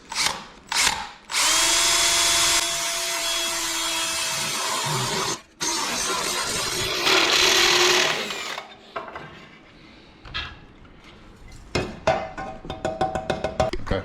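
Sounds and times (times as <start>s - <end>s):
power drill cutting sheet metal: 0.1s - 8.7s.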